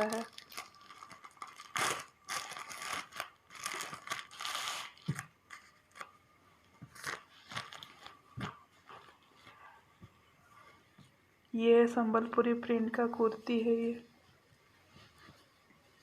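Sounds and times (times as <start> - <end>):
packaging tearing and crinkling: 0.0 - 6.2, 6.9 - 8.6.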